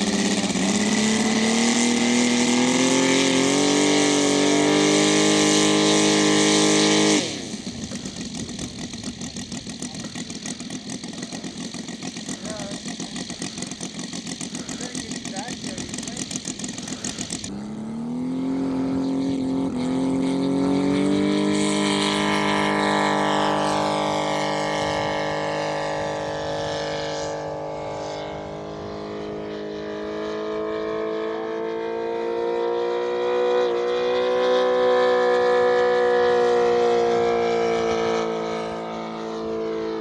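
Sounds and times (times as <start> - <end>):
model airplane engine running: 0.0 - 40.0.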